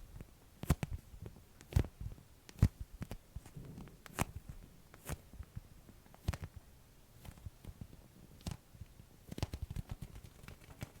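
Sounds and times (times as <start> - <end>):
sticky vinyl snaps and squeaks: 6.2 - 6.5, 9.3 - 11.0.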